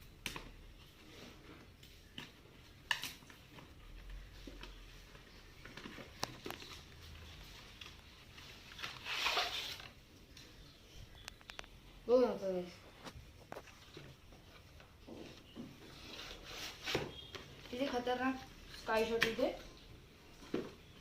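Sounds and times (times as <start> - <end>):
packaging rustle: 2.8 - 10.0.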